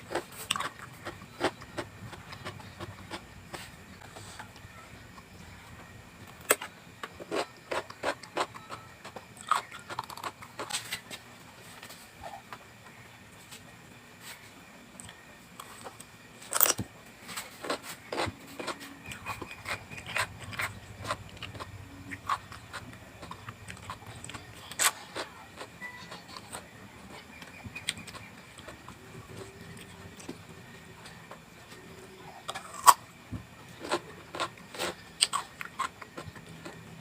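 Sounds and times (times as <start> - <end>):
crunching raw vegetables: 15.6 - 30.4
wet chewing clicks: 17.7 - 26.6.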